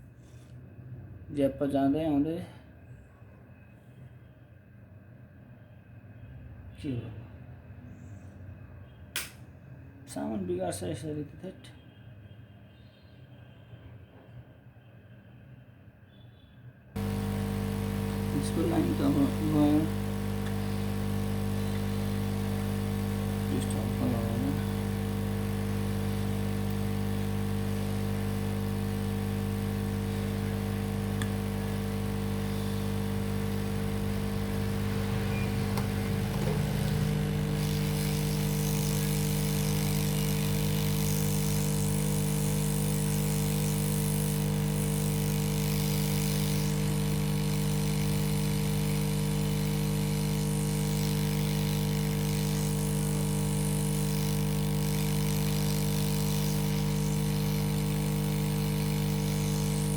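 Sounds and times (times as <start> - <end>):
small motor humming: 17.0 - 59.9.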